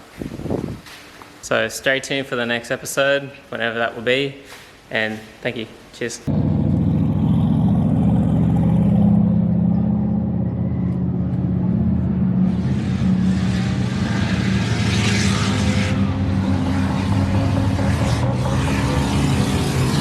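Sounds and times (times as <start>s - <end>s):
car engine running: 6.3s - 20.0s.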